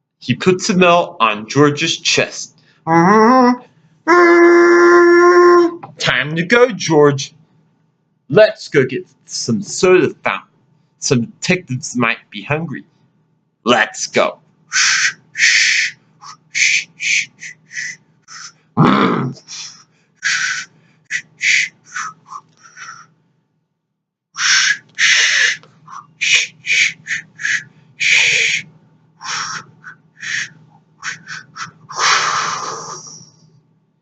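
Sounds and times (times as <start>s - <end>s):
faint steady hum: 0.0s - 34.0s
cartoon monkey chattering: 14.7s - 23.0s, 24.4s - 28.6s, 29.2s - 33.3s.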